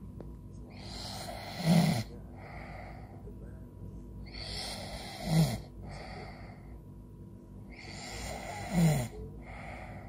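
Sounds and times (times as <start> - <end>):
person snoring: 0.8 - 3.1, 4.3 - 6.7, 7.8 - 10.0.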